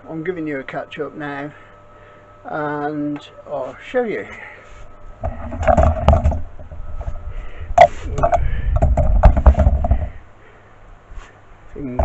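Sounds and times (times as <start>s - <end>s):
sharp knocks and clicks: 5.2s - 6.8s, 7.8s - 10.2s.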